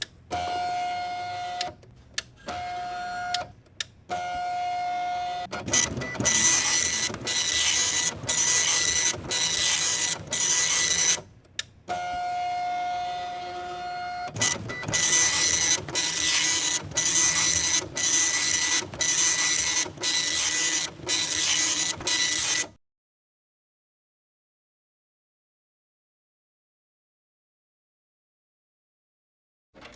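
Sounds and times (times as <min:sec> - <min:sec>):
printer motor whirring: 0:02.4 - 0:03.5, 0:04.1 - 0:11.3, 0:11.9 - 0:22.7
rasping print strokes: 0:05.6 - 0:11.2, 0:12.1 - 0:22.7.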